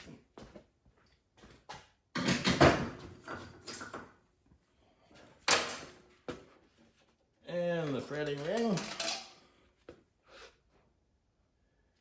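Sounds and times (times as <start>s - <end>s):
metal parts scraping and clattering: 8.0s - 9.4s.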